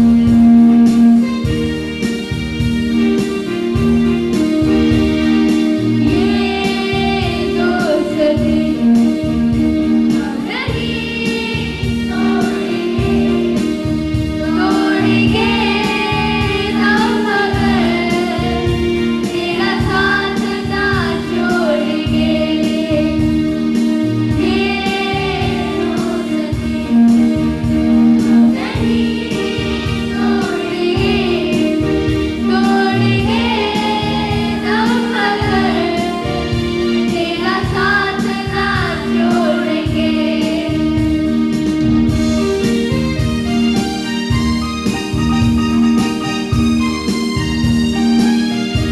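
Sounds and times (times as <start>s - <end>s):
held chords: 0.0s - 48.9s
steady drum beat: 0.0s - 48.9s
woman singing: 6.1s - 9.0s, 14.5s - 23.2s, 32.4s - 36.4s, 37.1s - 41.1s.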